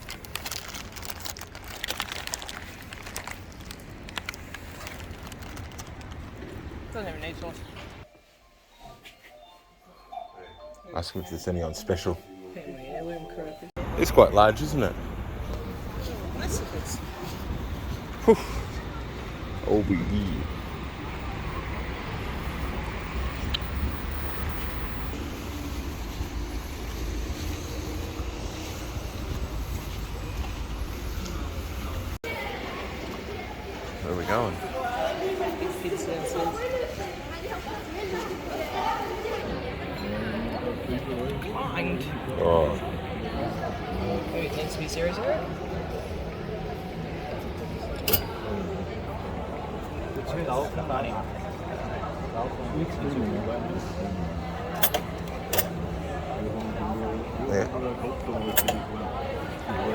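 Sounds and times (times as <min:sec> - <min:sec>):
sharp clicks and crackles: 0:00.0 - 0:06.7
passenger train rumbling on rails: 0:25.2 - 0:32.2.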